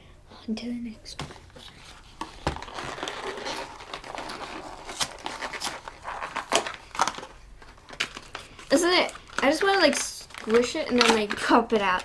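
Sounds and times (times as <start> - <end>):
toy packaging crinkling and tearing: 1.2 - 12.0.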